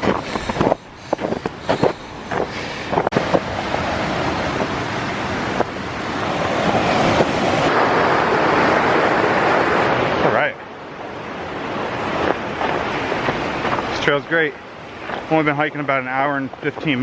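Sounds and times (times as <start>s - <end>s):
footsteps clicking: 0.0s - 3.2s
creek water rushing: 0.0s - 17.0s.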